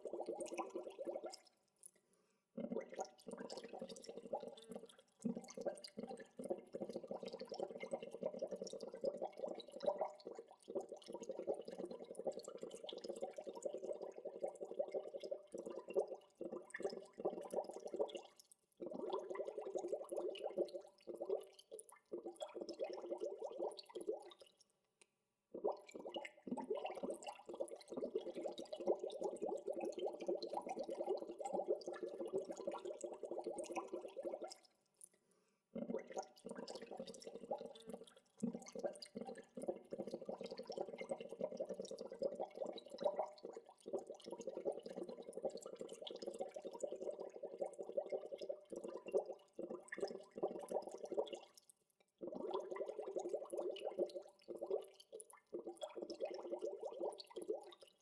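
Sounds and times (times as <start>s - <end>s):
water bubbling: 35.8s - 51.5s.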